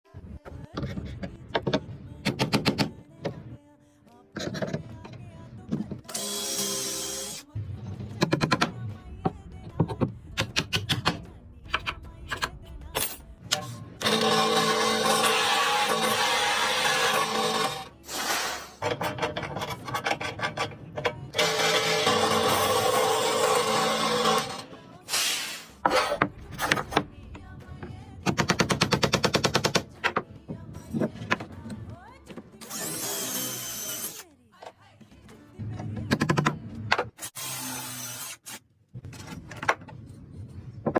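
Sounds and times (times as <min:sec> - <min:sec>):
power tool running: 0:14.0 - 0:18.4, 0:21.4 - 0:24.7.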